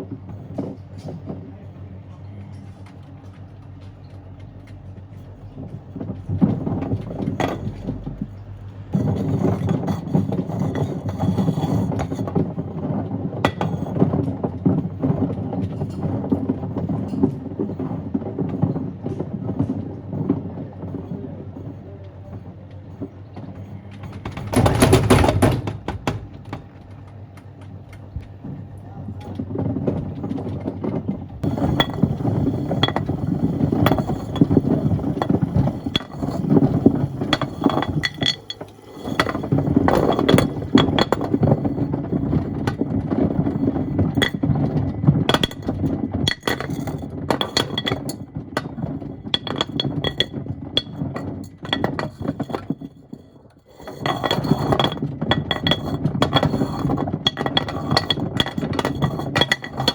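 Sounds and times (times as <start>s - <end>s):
washing machine low rumble: 0.0s - 59.9s
stones clinking in washing machine drum: 23.5s - 27.2s, 29.2s - 59.9s.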